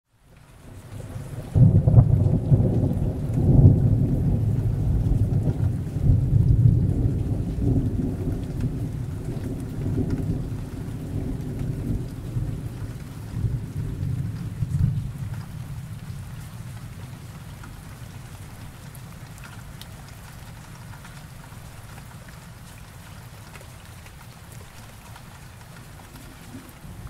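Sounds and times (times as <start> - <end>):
steady rain: 0.1 - 27.0
rolling thunder: 1.2 - 17.2.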